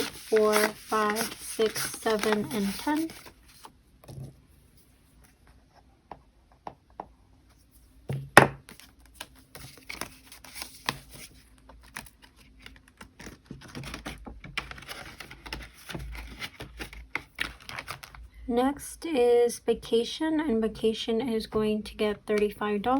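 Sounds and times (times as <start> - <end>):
paper bills rustling: 0.0 - 3.7, 8.7 - 18.2.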